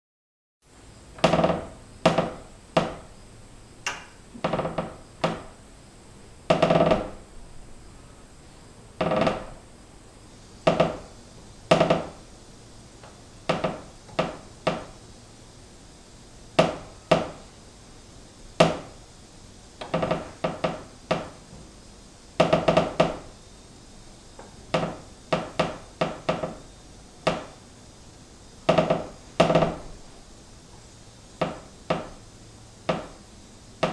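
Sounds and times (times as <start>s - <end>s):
wooden beam creaking: 1.2s - 3.1s, 4.3s - 5.6s, 6.5s - 7.2s, 9.0s - 9.6s, 10.7s - 11.1s, 11.7s - 12.2s, 13.5s - 14.9s, 19.8s - 21.4s, 22.4s - 23.3s, 28.7s - 30.0s, 32.9s - 33.2s.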